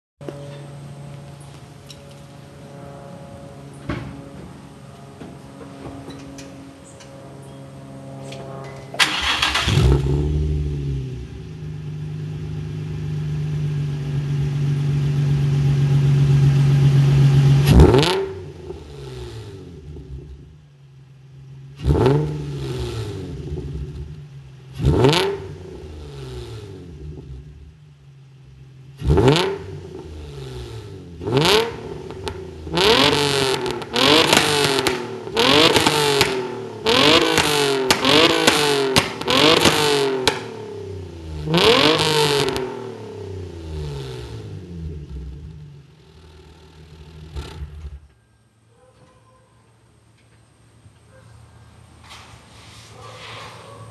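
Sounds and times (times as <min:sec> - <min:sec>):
car engine revving: 0:08.5 - 0:48.2.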